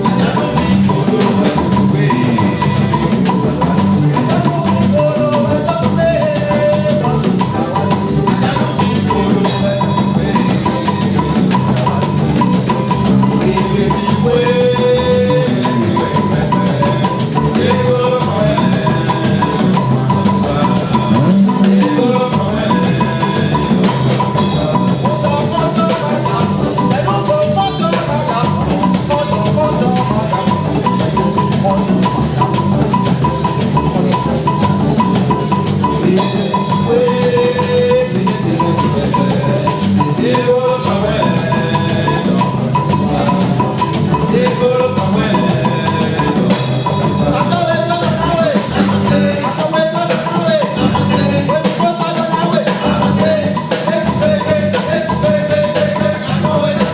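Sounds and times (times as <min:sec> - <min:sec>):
percussion-driven music: 0:00.0 - 0:56.9.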